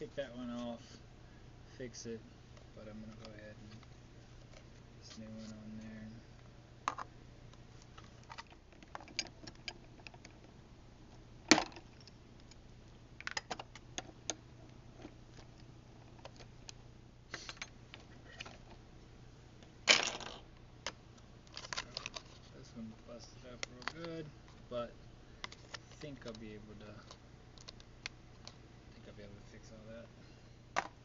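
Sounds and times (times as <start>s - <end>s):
plastic parts clicking and knocking: 8.2s - 10.5s, 13.2s - 14.4s, 30.8s - 31.0s.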